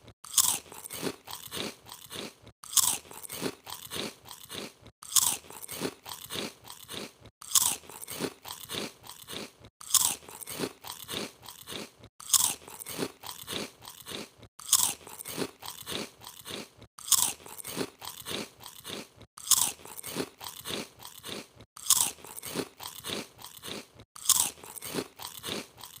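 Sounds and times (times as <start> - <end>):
chewing crunches: 0.2 - 26.0
crunchy chips bite: 0.2 - 26.0.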